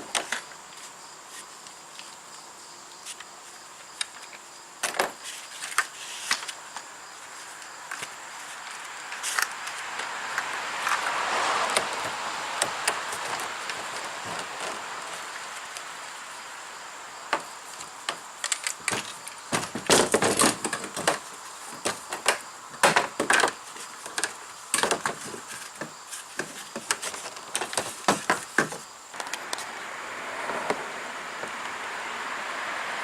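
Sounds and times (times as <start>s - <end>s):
steady rushing noise: 8.1s - 20.0s, 29.1s - 33.0s
plastic pipe cart parts knocking: 18.4s - 21.2s, 21.8s - 29.4s.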